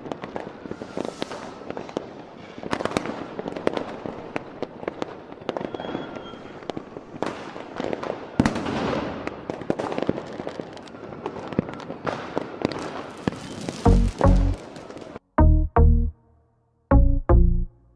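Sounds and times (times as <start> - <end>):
fireworks crackling: 0.0 - 15.2
fireworks exploding: 0.0 - 15.2
deep music beats: 13.9 - 14.6, 15.4 - 16.2, 16.9 - 17.8.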